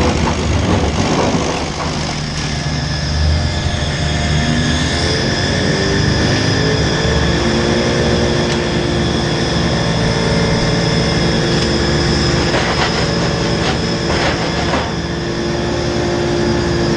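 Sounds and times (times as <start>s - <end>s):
engine-driven machine running: 0.0s - 16.9s.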